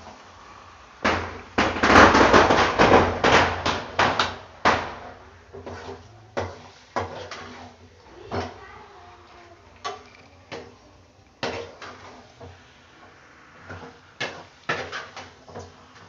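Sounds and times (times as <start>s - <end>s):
chicken frying in pot: 0.0s - 16.0s.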